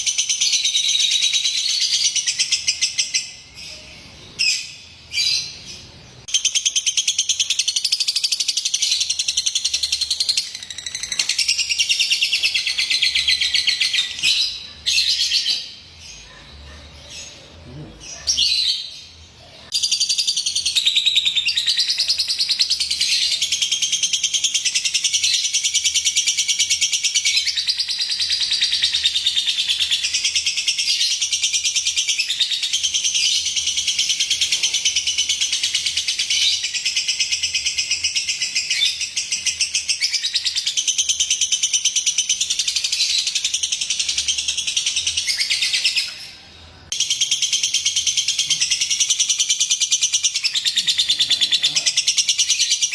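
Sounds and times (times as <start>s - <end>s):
bird chattering trill: 46.9s - 52.9s.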